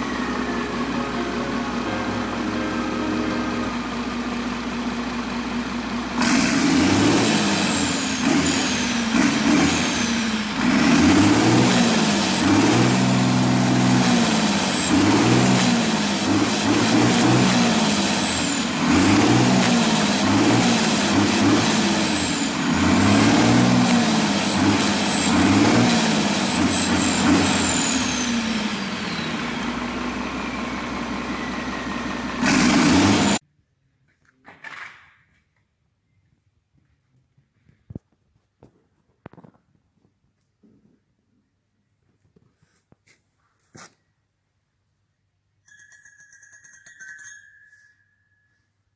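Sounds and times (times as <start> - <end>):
tractor diesel engine revving: 0.0 - 33.4
turbocharger whistle: 6.2 - 29.8, 30.4 - 33.4.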